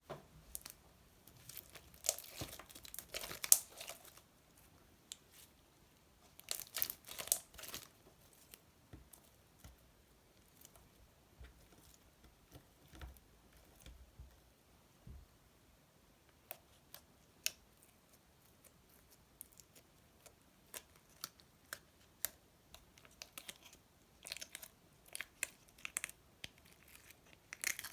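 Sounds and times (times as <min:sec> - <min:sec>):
slime crackling and crinkling: 0:00.4 - 0:05.6, 0:06.2 - 0:11.0, 0:16.4 - 0:27.9.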